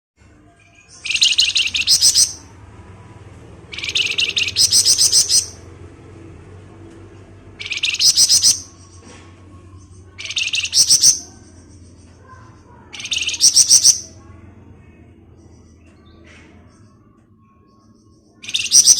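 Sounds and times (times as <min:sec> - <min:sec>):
faint low hum: 0:00.2 - 0:18.9
songbird trilling: 0:01.0 - 0:02.5, 0:03.7 - 0:05.6, 0:07.6 - 0:08.9, 0:10.0 - 0:11.4, 0:12.9 - 0:14.2, 0:18.4 - 0:18.9.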